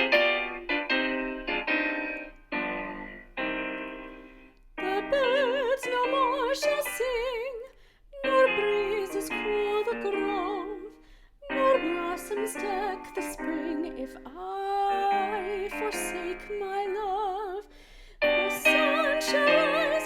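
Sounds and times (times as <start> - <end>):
piano chords: 0.0 - 7.4, 8.2 - 17.3, 18.2 - 20.0
woman singing with vibrato: 4.8 - 20.0.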